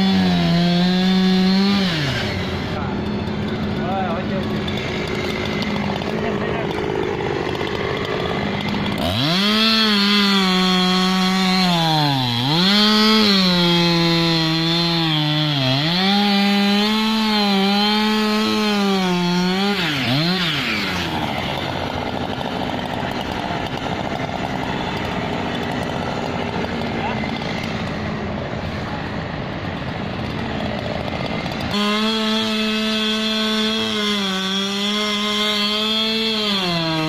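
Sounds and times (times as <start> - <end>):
chainsaw cutting wood: 0.0 - 37.0.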